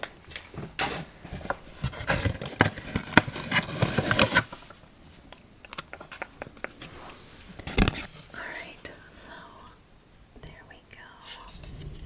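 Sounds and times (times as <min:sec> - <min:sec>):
packaging rustling and clicking: 0:00.3 - 0:04.8.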